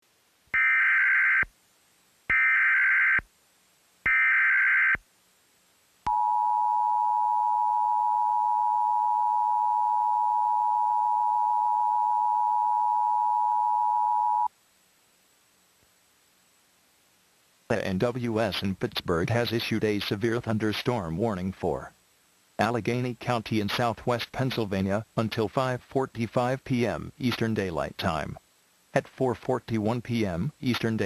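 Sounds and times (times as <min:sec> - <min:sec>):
two-tone attention signal: 0:06.1 - 0:14.5.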